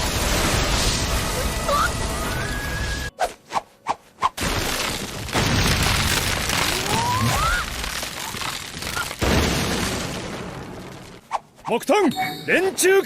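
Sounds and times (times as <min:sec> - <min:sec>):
rumbling crash of wood: 0:04.4 - 0:11.2.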